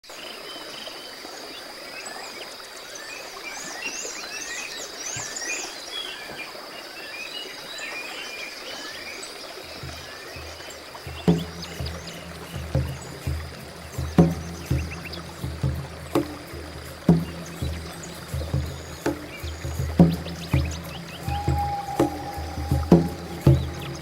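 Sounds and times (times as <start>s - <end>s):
birds chirping: 9.6s - 24.0s
insect trill: 9.9s - 24.0s
low musical tones: 11.2s - 24.0s.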